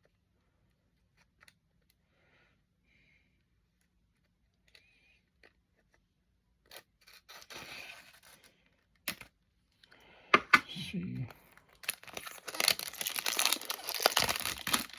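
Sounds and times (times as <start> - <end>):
light scraping of packaging: 6.7 - 8.6.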